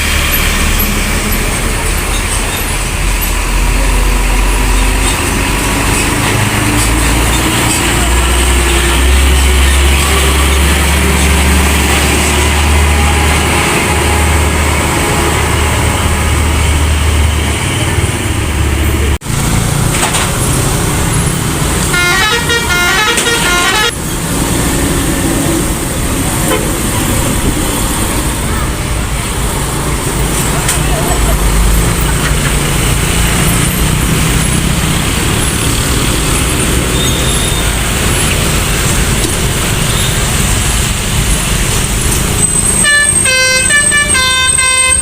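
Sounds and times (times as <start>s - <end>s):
heavy vehicle engine rumbling: 0.0s - 45.0s
multi-note musical bus horn: 21.9s - 24.0s, 42.6s - 45.0s.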